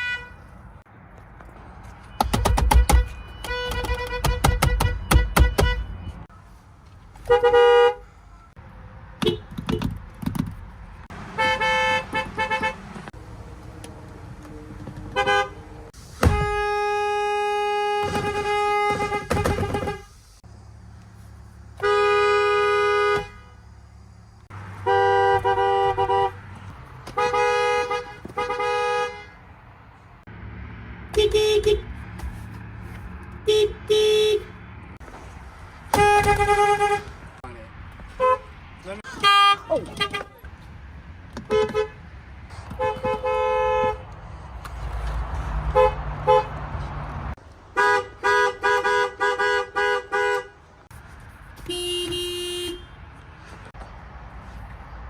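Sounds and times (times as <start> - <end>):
car horns honking: 0.0 - 0.5, 2.0 - 6.4, 7.2 - 8.6, 9.2 - 10.0, 11.0 - 13.2, 15.0 - 20.2, 21.7 - 23.9, 24.5 - 29.6, 31.1 - 32.1, 33.4 - 34.7, 35.9 - 37.4, 38.1 - 40.6, 41.3 - 44.2, 45.6 - 46.7, 47.7 - 50.7, 51.6 - 53.2
engine and traffic noise: 0.0 - 55.0.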